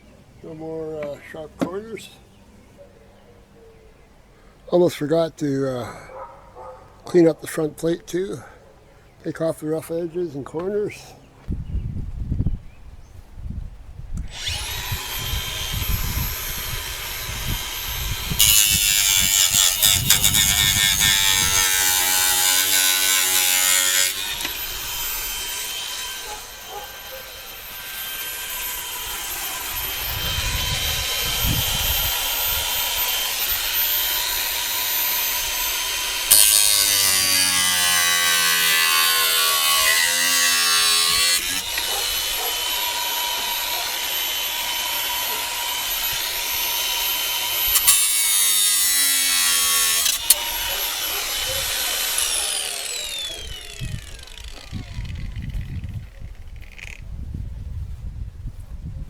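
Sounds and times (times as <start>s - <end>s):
grinder motor whining: 14.2s - 57.0s
harsh grinding on metal: 14.3s - 55.8s.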